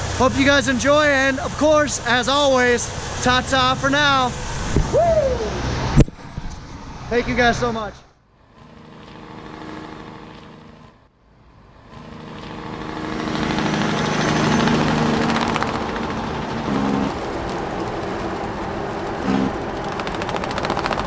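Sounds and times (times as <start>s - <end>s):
truck engine drone: 0.0s - 21.0s
fast even rattling pulse: 13.2s - 21.0s.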